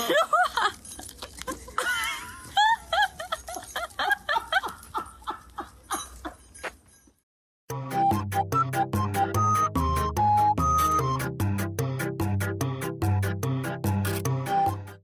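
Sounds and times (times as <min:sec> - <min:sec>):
person laughing: 0:00.0 - 0:06.4.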